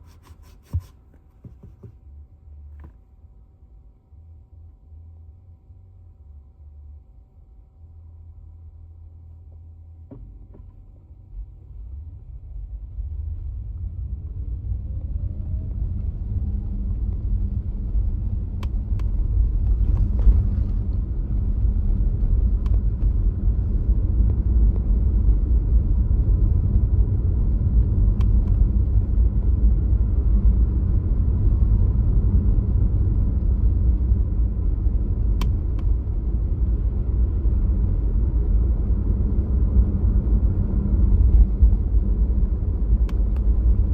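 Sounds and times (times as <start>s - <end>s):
faint whine: 0.0s - 43.9s
road and tyre rumble: 9.5s - 43.9s.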